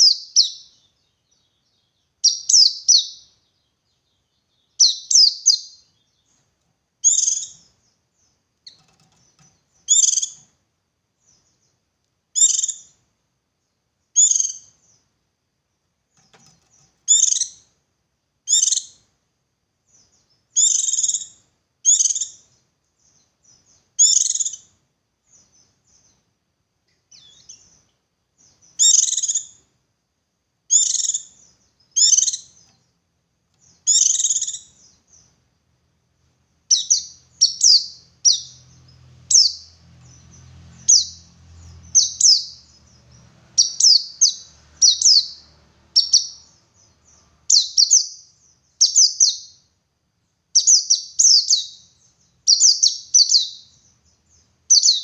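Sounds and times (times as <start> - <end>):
bird singing high thin chirps: 0.0 - 6.4, 7.0 - 10.5, 12.4 - 13.0, 14.2 - 15.0, 16.2 - 17.7, 18.5 - 19.0, 19.9 - 24.7, 27.1 - 29.6, 30.7 - 32.8, 33.5 - 35.3, 36.7 - 49.7, 50.6 - 55.0.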